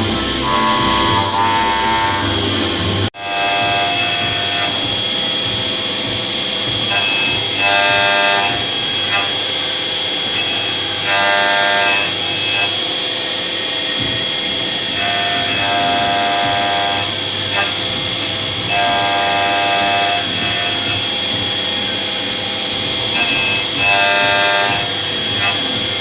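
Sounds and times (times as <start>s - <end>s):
motor tone: 0.0s - 9.6s
machine tool high-pitched whine: 0.0s - 26.0s.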